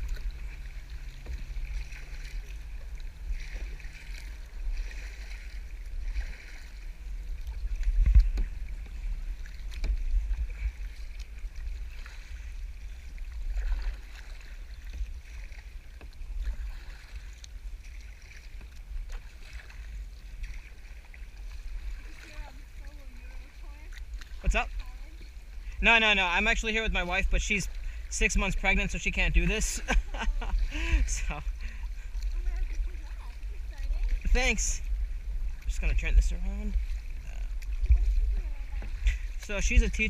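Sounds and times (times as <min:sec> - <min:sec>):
wind buffeting microphone: 0:00.0 - 0:15.4, 0:27.2 - 0:40.0
kayak paddle splashing: 0:00.0 - 0:40.0.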